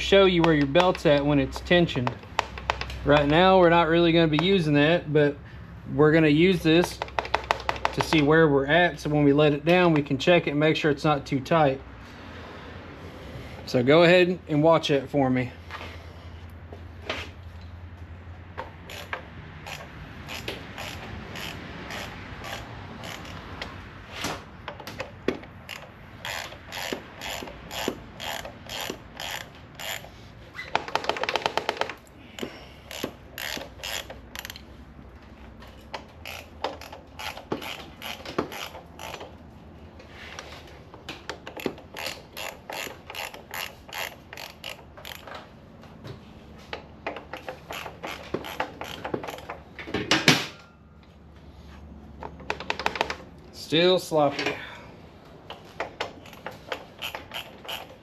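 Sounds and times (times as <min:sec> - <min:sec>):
ratchet clicking: 0:18.6 - 0:23.8, 0:24.7 - 0:30.2, 0:30.8 - 0:34.7, 0:35.9 - 0:39.4, 0:41.2 - 0:45.4, 0:47.0 - 0:49.6, 0:55.8 - 0:58.0.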